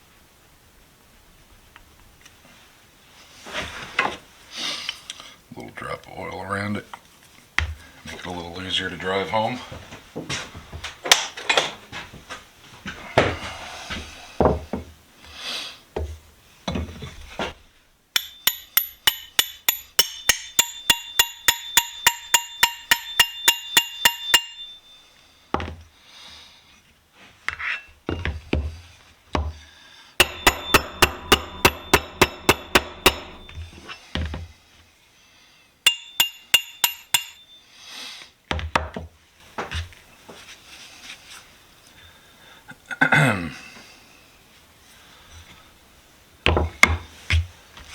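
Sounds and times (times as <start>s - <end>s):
hammer striking steel: 18.2s - 25.0s, 30.2s - 33.6s, 35.9s - 37.6s
handling clatter and knocks: 30.2s - 33.7s.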